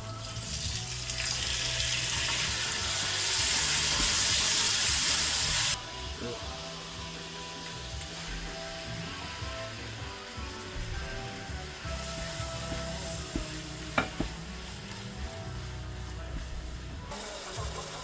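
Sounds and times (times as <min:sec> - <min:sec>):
water running from tap: 0:00.0 - 0:05.8.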